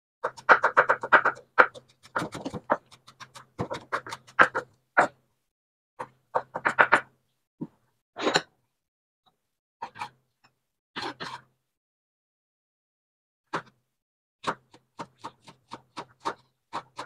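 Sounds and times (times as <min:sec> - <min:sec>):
knife chopping on cutting board: 0:00.2 - 0:04.7, 0:14.4 - 0:17.0.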